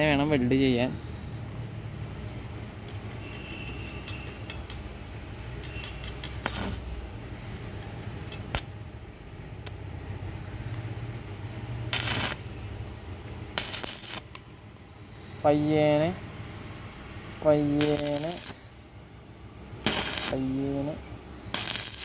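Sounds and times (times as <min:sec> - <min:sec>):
welding arc crackle: 0:06.2 - 0:07.0, 0:08.3 - 0:08.9, 0:09.6 - 0:09.9, 0:11.9 - 0:14.5, 0:17.4 - 0:18.8, 0:19.8 - 0:22.0.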